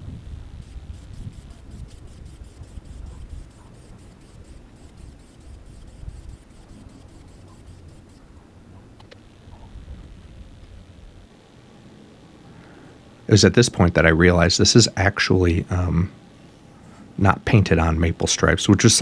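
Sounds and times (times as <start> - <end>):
rhythmic scratching strokes: 0.0 - 8.4.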